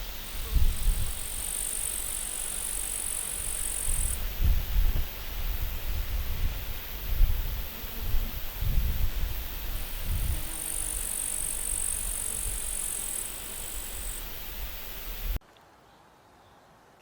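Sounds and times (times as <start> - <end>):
wind buffeting microphone: 0.0 - 1.4, 3.3 - 15.4
steady hiss: 0.0 - 15.4.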